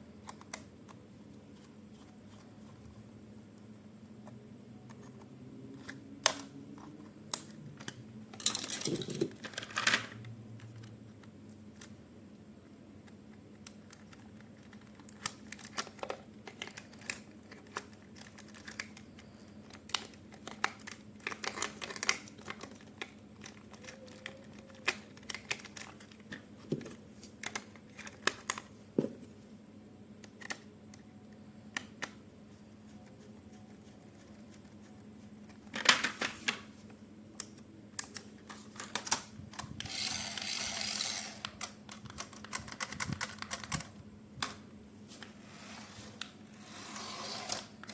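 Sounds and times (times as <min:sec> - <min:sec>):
plastic parts clicking and tapping: 0:04.9 - 0:11.9, 0:13.0 - 0:29.2, 0:41.4 - 0:44.6
plastic parts clattering: 0:07.8 - 0:10.2.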